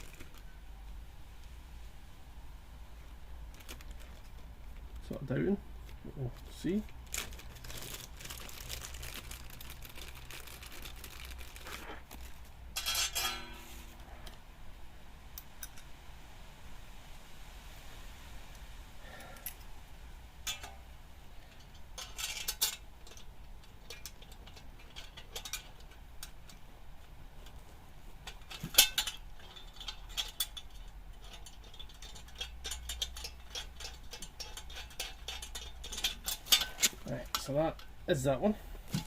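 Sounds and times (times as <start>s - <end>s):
metal bolts and nuts clinking: 11.1s - 14.4s, 20.4s - 26.7s, 28.2s - 38.2s.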